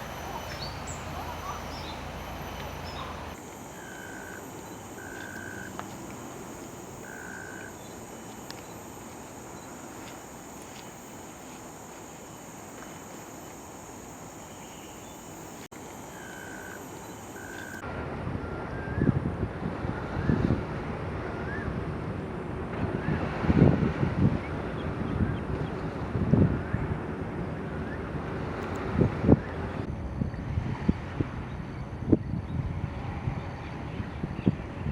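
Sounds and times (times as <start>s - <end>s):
high-pitched insect drone: 0.0s - 17.8s.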